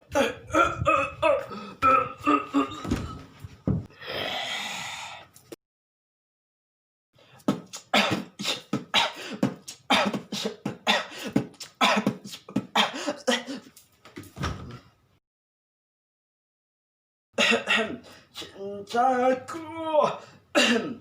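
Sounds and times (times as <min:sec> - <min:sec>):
person coughing rhythmically: 0:00.0 - 0:03.2, 0:07.4 - 0:13.7, 0:17.4 - 0:18.6, 0:20.5 - 0:21.0.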